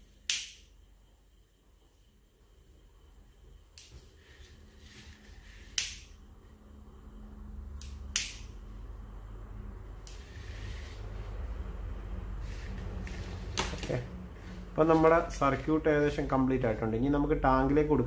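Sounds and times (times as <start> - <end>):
low hum: 0.0 - 18.0
tools and wire clicking: 5.7 - 6.2, 7.7 - 8.6.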